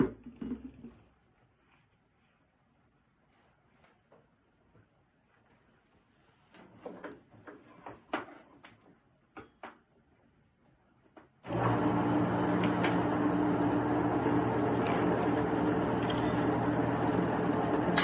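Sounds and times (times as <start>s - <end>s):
lathe motor humming: 11.5s - 18.0s.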